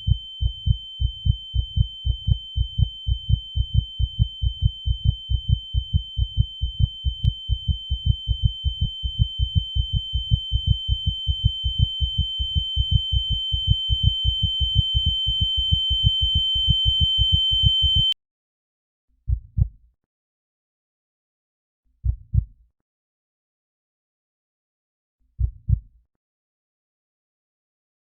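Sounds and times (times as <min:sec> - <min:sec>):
heartbeat double thumps: 0:00.0 - 0:18.1, 0:19.3 - 0:19.9, 0:22.0 - 0:22.6, 0:25.4 - 0:26.0.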